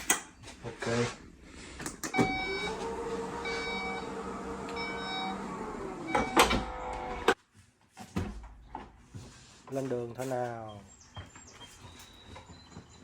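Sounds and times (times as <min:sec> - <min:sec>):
electric motor humming: 0:02.4 - 0:07.4.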